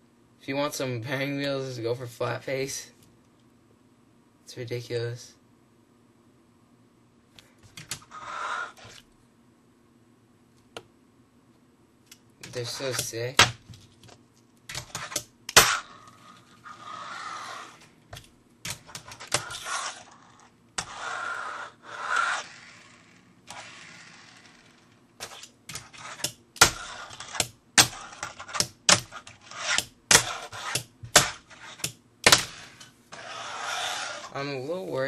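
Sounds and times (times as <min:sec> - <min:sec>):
fingerboard wheels rolling: 0:07.8 - 0:09.0, 0:14.8 - 0:18.0, 0:18.7 - 0:34.4.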